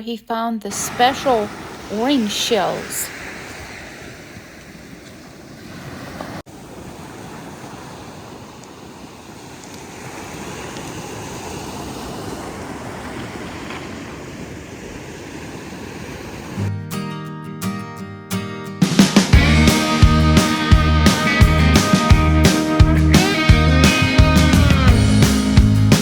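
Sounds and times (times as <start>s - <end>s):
wind on microphone: 0.7s - 6.4s
ocean surf washing onto beach: 0.7s - 16.7s.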